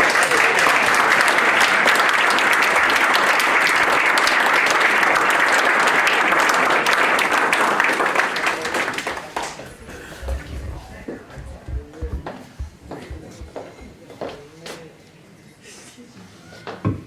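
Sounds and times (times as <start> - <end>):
audience applauding: 0.0 - 14.0.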